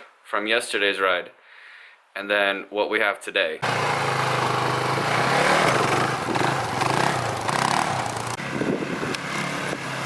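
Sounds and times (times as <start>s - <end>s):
quad bike engine running: 3.6s - 10.0s.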